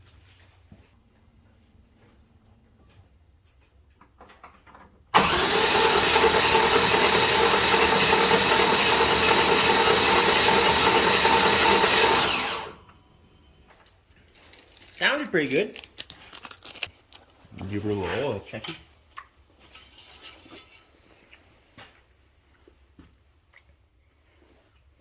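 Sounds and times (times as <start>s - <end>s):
starter motor cranking engine: 5.2s - 13.7s.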